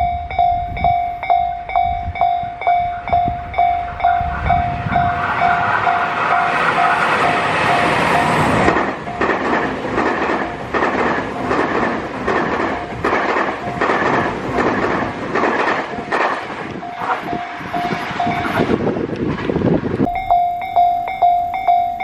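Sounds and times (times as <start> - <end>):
level crossing warning bell: 0.0 - 11.6, 12.7 - 14.1, 16.7 - 18.8, 20.0 - 22.0
train wheels clattering over rails: 2.2 - 20.1.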